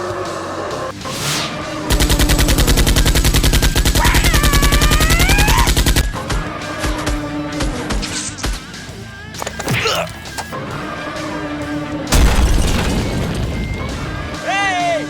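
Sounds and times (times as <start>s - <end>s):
background music: 0.0s - 15.0s
machine-gun fire: 1.9s - 6.0s, 12.2s - 13.9s.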